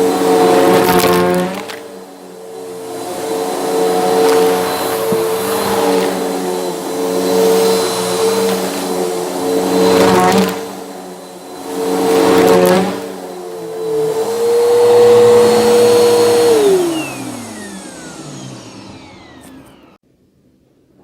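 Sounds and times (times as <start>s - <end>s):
vacuum cleaner motor whining: 0.0s - 20.0s.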